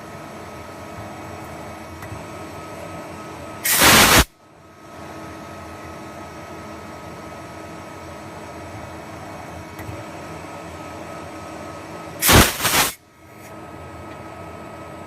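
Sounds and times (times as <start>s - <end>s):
machine hum with faint whine: 0.0s - 15.0s
loud hiss: 3.6s - 4.3s, 12.2s - 13.0s.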